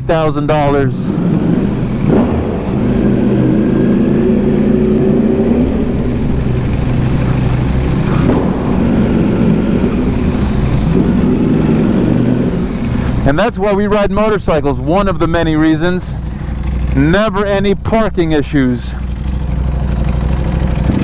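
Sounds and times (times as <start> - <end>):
motorcycle engine revving: 0.0 - 17.6, 18.9 - 21.0.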